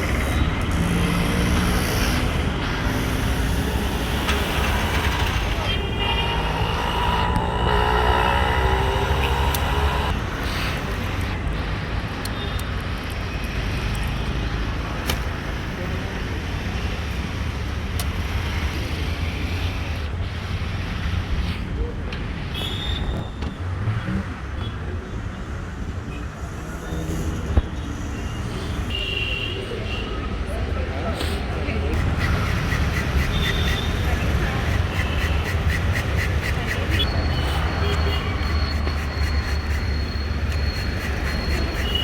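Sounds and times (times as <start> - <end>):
passing vehicles rumble: 0.0 - 28.9, 29.6 - 42.0.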